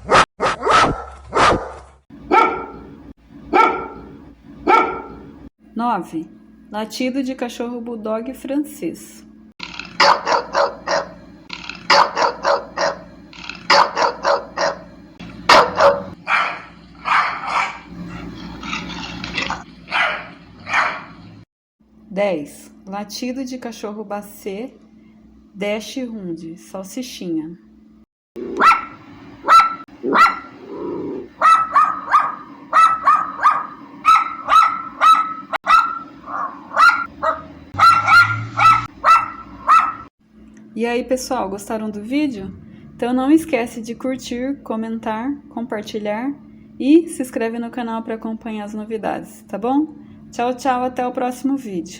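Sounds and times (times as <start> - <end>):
dog barking: 0.0 - 2.8, 3.5 - 5.2, 10.0 - 11.2, 11.9 - 13.1, 13.7 - 14.9, 15.5 - 18.3, 19.4 - 21.1, 28.5 - 30.6, 31.4 - 40.1
steady low hum: 2.1 - 51.9.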